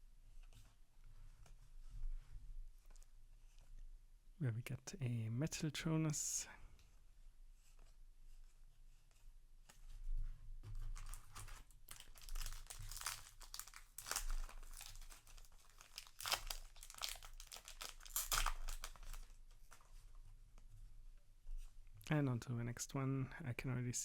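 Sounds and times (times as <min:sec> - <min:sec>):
foil wrapper crinkling and tearing: 0:10.9 - 0:19.8.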